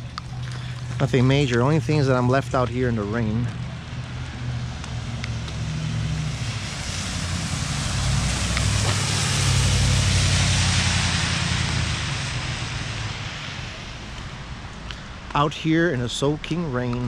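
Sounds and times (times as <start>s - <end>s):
vehicle engine hum: 0.0s - 17.0s
tyre hiss on wet road: 4.4s - 15.3s.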